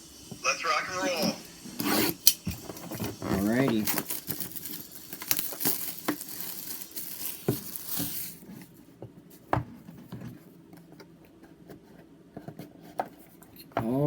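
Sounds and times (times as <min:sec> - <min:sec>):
plastic wrapping crinkling and tearing: 0:02.6 - 0:08.5.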